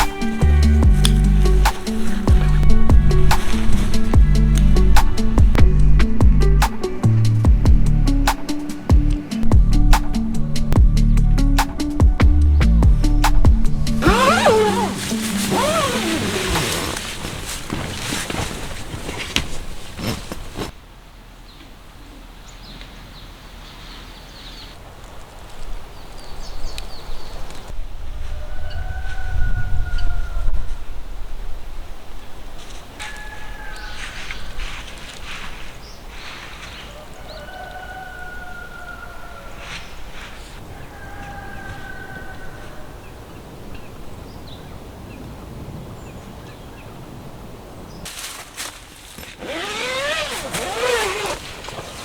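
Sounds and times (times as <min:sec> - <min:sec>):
wind buffeting microphone: 0:25.7 - 0:32.6.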